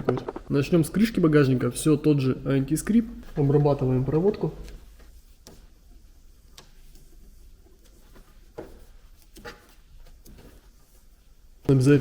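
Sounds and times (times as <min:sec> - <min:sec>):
tape rustling: 0:03.1 - 0:11.8.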